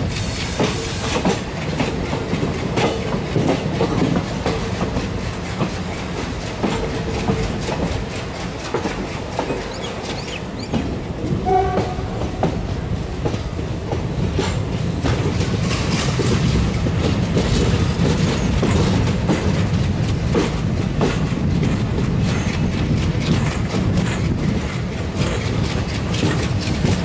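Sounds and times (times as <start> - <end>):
train rumbling on track: 0.0 - 27.0
wheels clacking over rail joints: 0.0 - 27.0.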